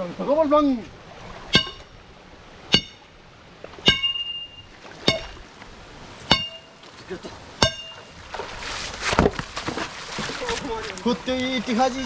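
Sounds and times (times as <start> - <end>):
hard object striking river stone: 1.5 - 1.9, 2.7 - 3.0, 3.8 - 4.4, 5.0 - 5.4, 6.3 - 6.8, 7.6 - 8.1.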